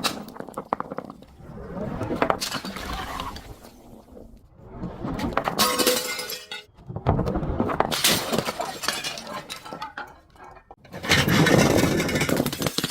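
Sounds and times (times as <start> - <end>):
glass bottles breaking: 5.6 - 6.7, 7.9 - 10.6.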